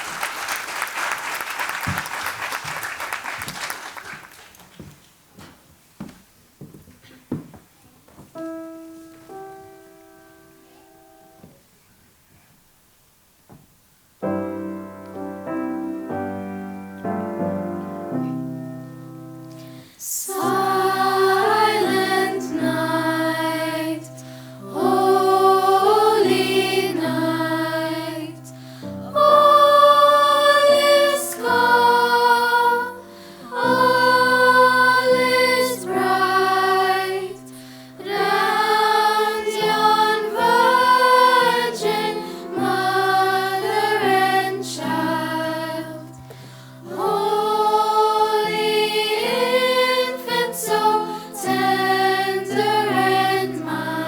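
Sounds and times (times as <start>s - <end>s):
choir singing: 20.0s - 54.0s.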